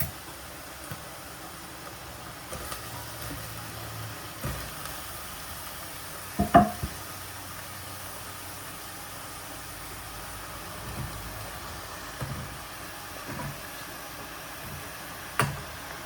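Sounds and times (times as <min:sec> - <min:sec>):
cookware knocking: 0:06.4 - 0:07.0.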